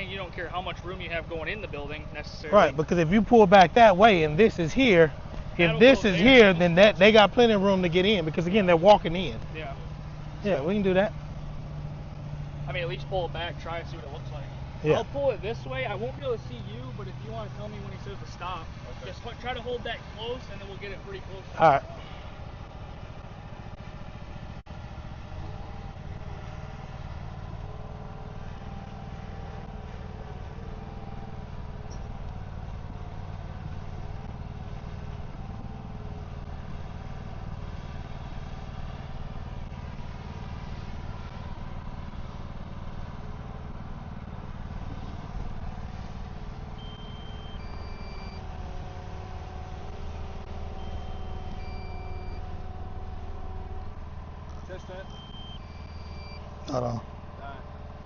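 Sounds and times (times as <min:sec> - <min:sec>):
truck engine running: 0:00.0 - 0:58.0
short high beeps: 0:50.8 - 0:52.4, 0:55.0 - 0:56.4.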